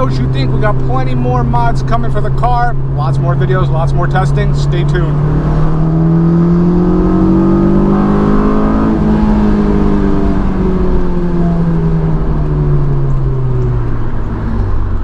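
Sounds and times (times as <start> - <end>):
road noise: 0.0 - 15.0
car engine revs falling: 3.7 - 15.0.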